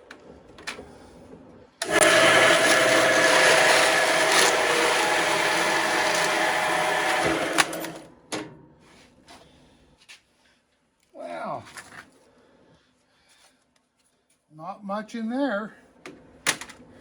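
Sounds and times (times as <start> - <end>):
band saw cutting plastic: 1.8 - 8.1.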